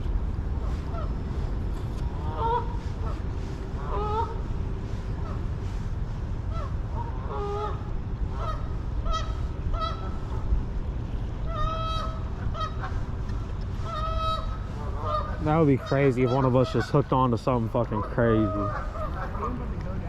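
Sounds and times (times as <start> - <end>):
steady low rumble: 0.0 - 20.0
geese honking: 0.6 - 1.2, 2.1 - 4.5, 6.4 - 10.5, 11.4 - 19.8.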